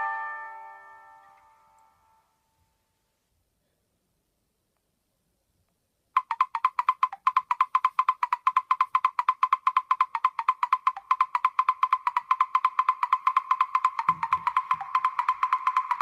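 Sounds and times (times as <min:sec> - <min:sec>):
phone ringtone: 0:00.0 - 0:02.2, 0:06.2 - 0:16.0.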